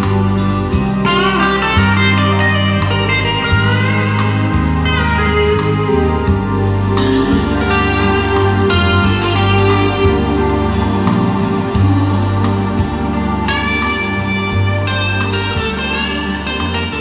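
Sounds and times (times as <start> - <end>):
music over loudspeakers: 0.0 - 17.0.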